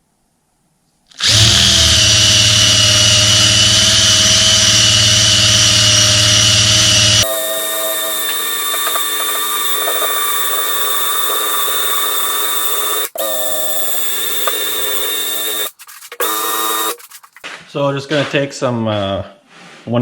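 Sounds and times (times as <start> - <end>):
drill whining against door: 1.2 - 17.0.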